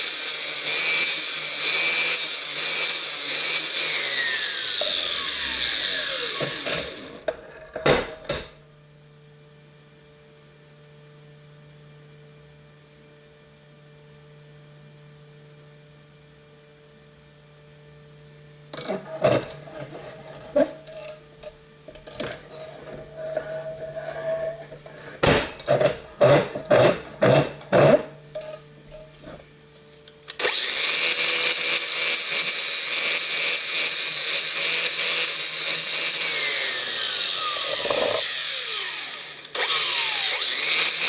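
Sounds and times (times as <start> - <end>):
grinder spinning down whine: 0.0 - 7.6, 30.3 - 41.0
angle grinder grinding metal: 0.0 - 8.6, 18.8 - 21.3, 21.9 - 29.4, 30.3 - 41.0.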